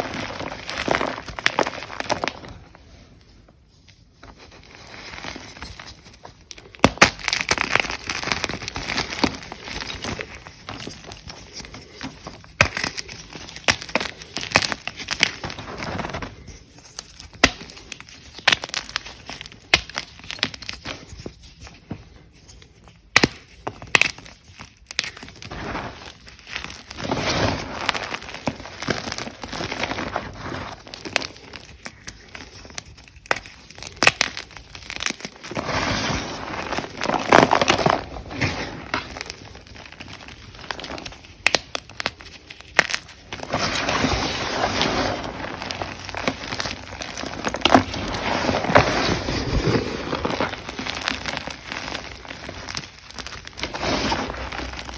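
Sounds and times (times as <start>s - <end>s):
chalk crunching: 25.1s - 54.9s.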